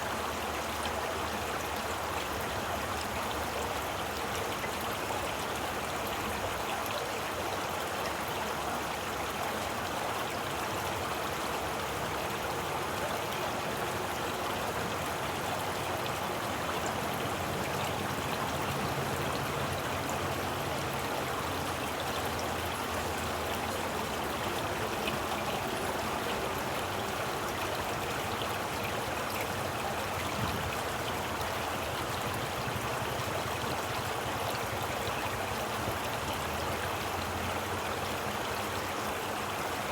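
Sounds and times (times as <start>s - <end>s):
stream of water running: 0.0s - 39.9s.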